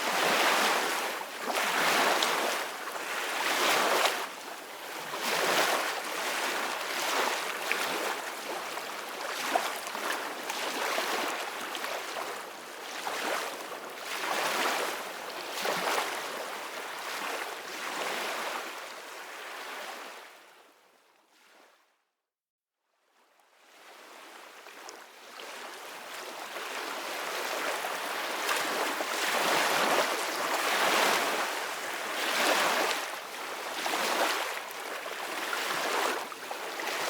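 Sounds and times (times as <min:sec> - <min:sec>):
ocean waves washing on beach: 0:25.5 - 0:37.0.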